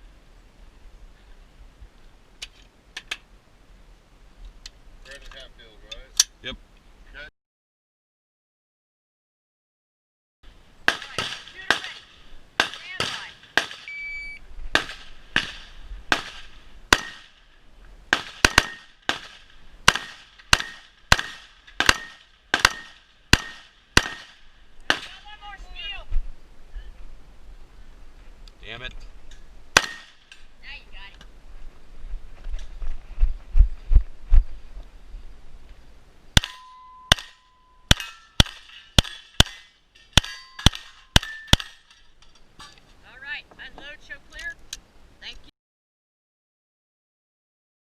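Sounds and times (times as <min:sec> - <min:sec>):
faint ringing tone: 0:13.9 - 0:14.4, 0:36.5 - 0:37.9
gunshots with ringing tail: 0:14.7 - 0:17.4, 0:18.1 - 0:25.1, 0:29.8 - 0:30.2, 0:36.4 - 0:39.6.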